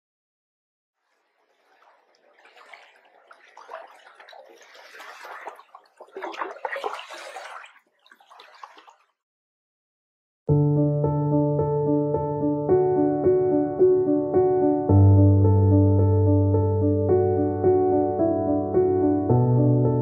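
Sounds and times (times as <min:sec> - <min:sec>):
water gurgling and splashing: 0:01.0 - 0:09.2.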